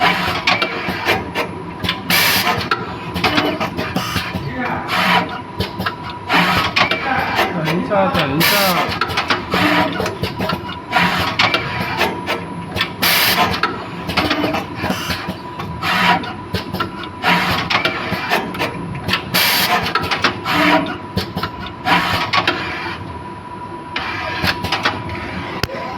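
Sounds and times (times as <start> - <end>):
machine parts clicking and knocking: 5.2 - 15.4.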